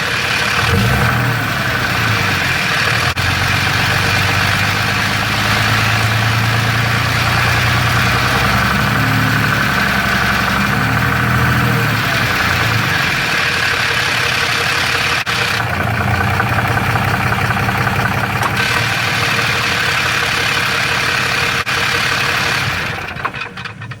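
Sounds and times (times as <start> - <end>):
diesel engine idling: 0.0 - 24.0
rattle from torque converter: 0.0 - 24.0.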